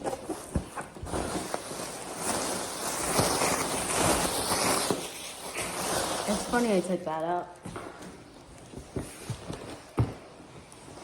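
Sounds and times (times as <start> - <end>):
packaging rustling and crinkling: 0.0 - 7.0.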